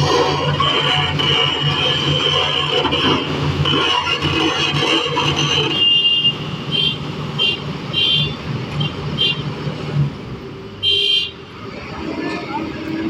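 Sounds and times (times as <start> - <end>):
high-pitched squeals: 0.0 - 6.0
diesel engine running: 0.0 - 10.8.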